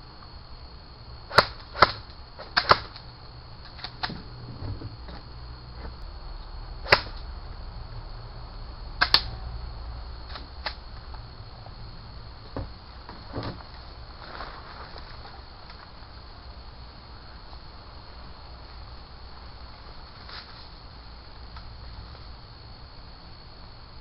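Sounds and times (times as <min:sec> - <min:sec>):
airsoft guns firing: 0:01.3 - 0:03.0, 0:06.8 - 0:07.2.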